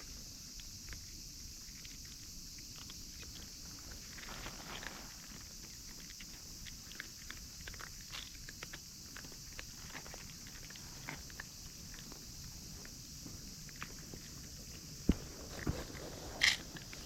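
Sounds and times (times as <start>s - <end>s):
steady high-pitched hiss: 0.0s - 17.0s
soft rustles: 3.2s - 17.0s.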